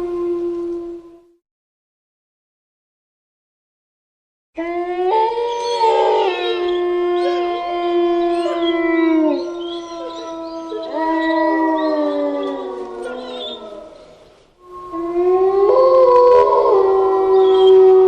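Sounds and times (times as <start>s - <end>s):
wolves howling in chorus: 4.6s - 18.0s.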